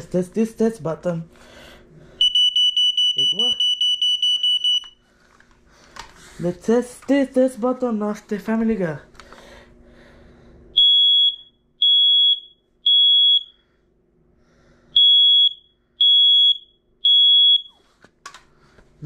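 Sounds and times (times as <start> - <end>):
smoke alarm beeping: 2.2 - 5.0, 10.7 - 13.7, 15.0 - 17.8.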